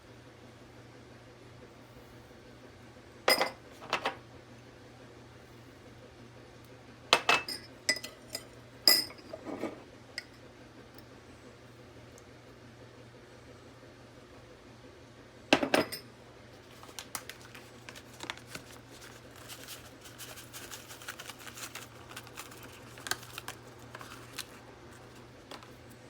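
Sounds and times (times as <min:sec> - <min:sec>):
dishes and utensils clattering: 0:07.2 - 0:10.3, 0:15.6 - 0:16.1.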